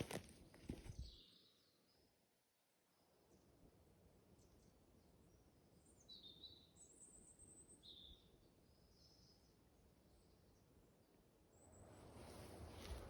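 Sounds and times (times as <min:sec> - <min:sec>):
faint bird chirps: 0:04.2 - 0:12.6.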